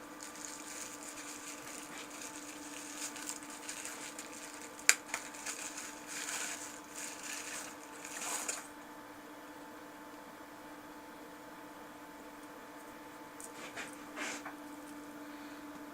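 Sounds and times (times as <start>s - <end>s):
rustling and scraping handling noises: 0.0s - 8.7s, 12.8s - 15.0s
faint steady hum: 0.0s - 15.9s.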